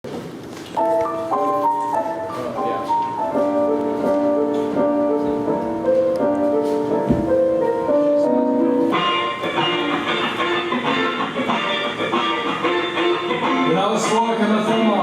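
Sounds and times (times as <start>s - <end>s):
keyboard chords: 0.7s - 15.0s.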